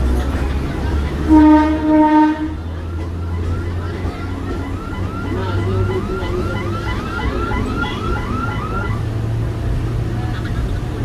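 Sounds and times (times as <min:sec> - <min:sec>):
train low rumble: 0:00.0 - 0:11.0
warbling tone: 0:02.5 - 0:09.3.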